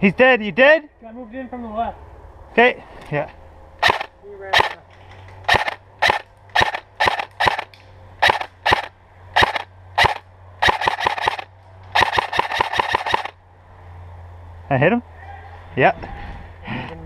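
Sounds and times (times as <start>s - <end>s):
airsoft gun firing: 3.8s - 4.8s, 5.5s - 13.3s.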